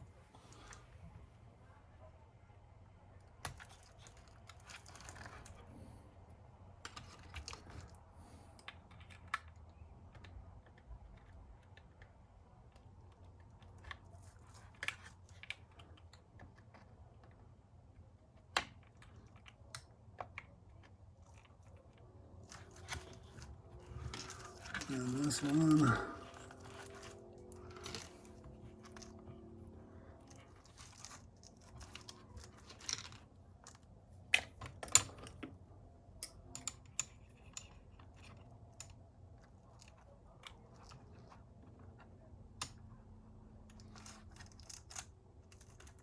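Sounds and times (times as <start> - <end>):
small parts clicking and tapping: 3.2 - 5.7, 6.8 - 46.0.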